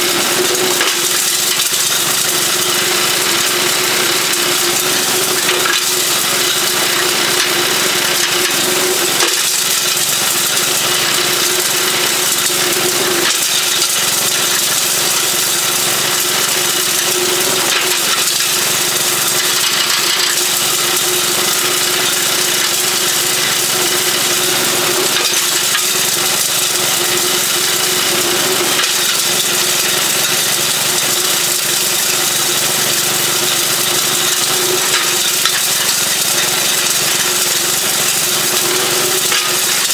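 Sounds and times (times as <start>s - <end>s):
engine running steadily: 0.0s - 39.9s
blade smashing glass bottles: 0.5s - 39.9s.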